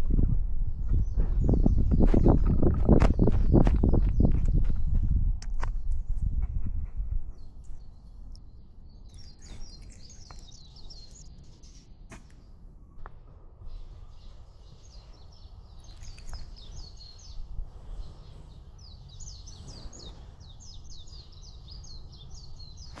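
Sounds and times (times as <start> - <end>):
steady low rumble: 0.0 - 14.6
small birds chirping: 0.6 - 6.1, 6.7 - 23.0.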